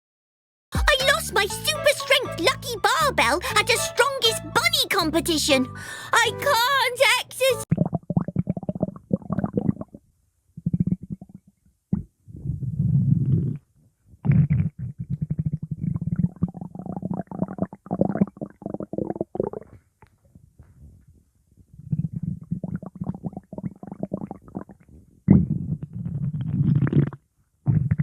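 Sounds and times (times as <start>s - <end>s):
stomach growling: 7.7s - 10.0s, 10.6s - 21.1s, 21.8s - 28.0s.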